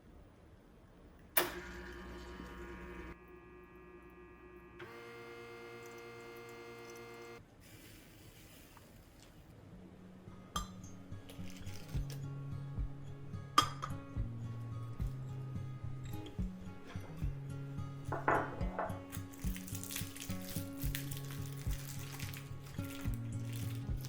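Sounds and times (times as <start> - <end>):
electric appliance motor humming: 1.4 - 7.4.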